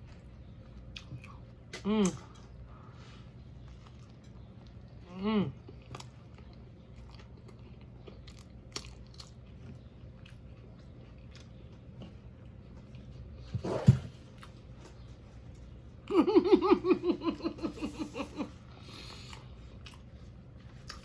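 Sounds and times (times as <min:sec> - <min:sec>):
biting and chewing: 0:03.6 - 0:13.5, 0:18.8 - 0:21.0.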